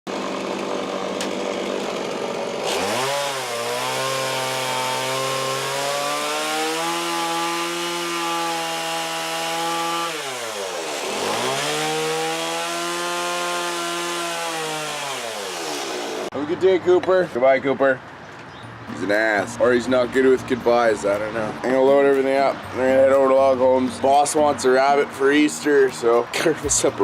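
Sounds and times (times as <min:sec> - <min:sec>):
chainsaw running at high speed: 0:00.1 - 0:16.3.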